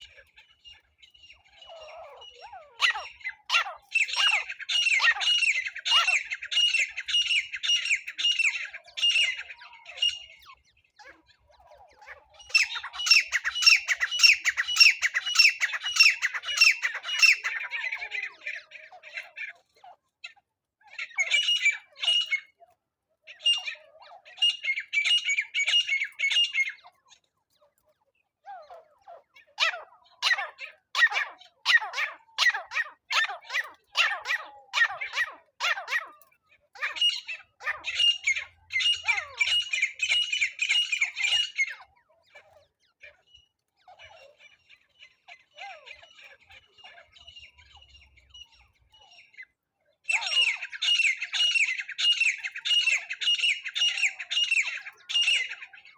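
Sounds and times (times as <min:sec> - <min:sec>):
francolin calling: 0:12.5 - 0:18.2.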